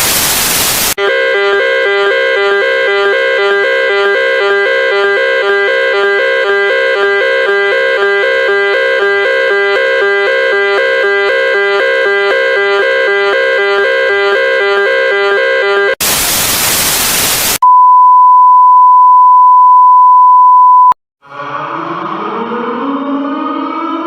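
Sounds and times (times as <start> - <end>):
two-note emergency alarm tone: 1.0 - 16.0.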